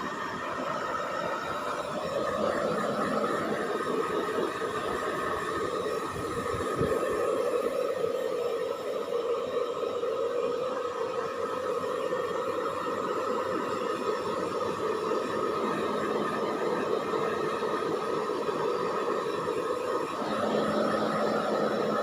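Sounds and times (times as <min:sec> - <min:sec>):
hair dryer blowing: 0:00.0 - 0:22.0.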